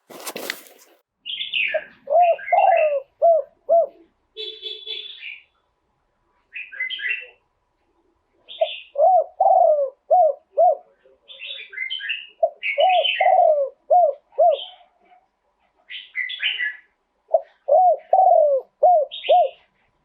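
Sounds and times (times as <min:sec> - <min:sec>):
higher bird chirps: 0:01.2 - 0:05.6
dove cooing: 0:01.7 - 0:04.2, 0:08.5 - 0:11.6, 0:12.3 - 0:15.2, 0:17.3 - 0:19.7.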